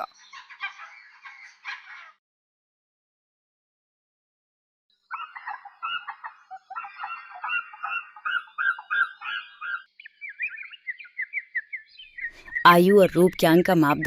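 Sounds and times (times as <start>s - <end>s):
birds chattering: 0.0s - 2.2s, 5.1s - 14.0s
quick repeated bird chirps: 0.0s - 2.2s, 5.1s - 12.8s.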